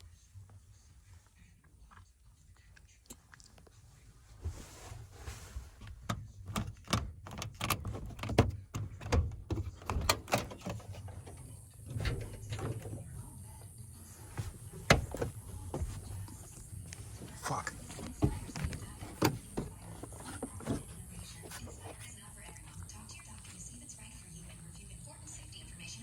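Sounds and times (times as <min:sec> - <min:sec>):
irregular knocks and clunks: 0:06.5 - 0:22.1.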